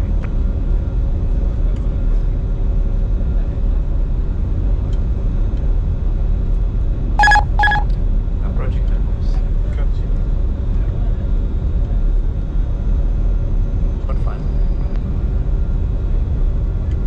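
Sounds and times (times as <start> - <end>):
jet cockpit rumble: 7.2 - 7.9
short electronic beep: 7.2 - 7.9.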